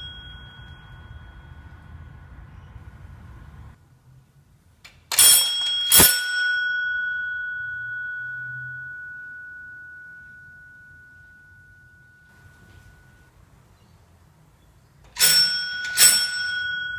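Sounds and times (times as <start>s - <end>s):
doorbell chime: 0.0s - 2.4s, 5.2s - 13.4s, 15.2s - 16.9s.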